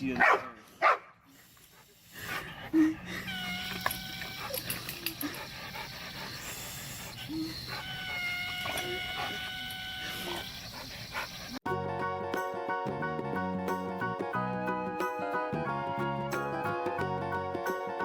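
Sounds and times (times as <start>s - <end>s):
dog whining: 3.0s - 11.0s.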